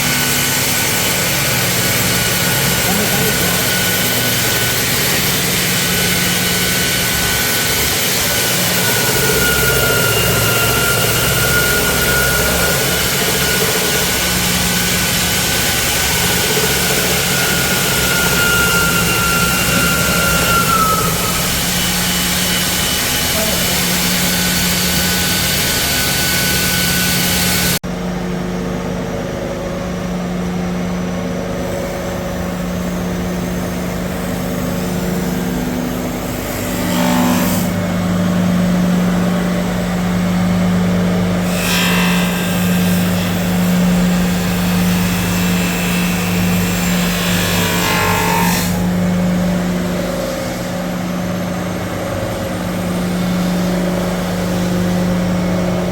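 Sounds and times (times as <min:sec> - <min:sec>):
belt grinder motor hum: 0:00.0 - 0:27.8
harsh grinding noise: 0:00.0 - 0:27.8.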